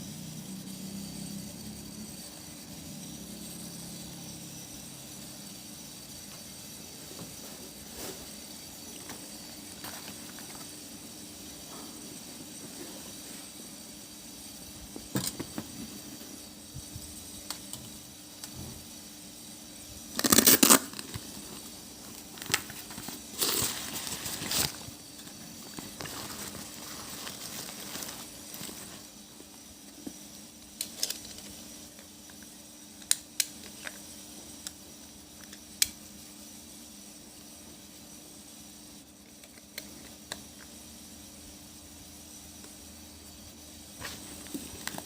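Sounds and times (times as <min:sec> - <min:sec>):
plastic and paper crinkling: 0:22.1 - 0:29.0.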